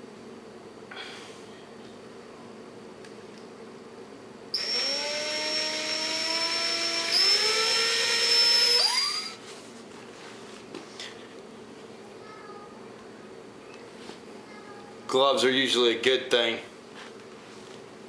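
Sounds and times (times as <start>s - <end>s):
cordless drill motor whine: 4.6s - 9.4s.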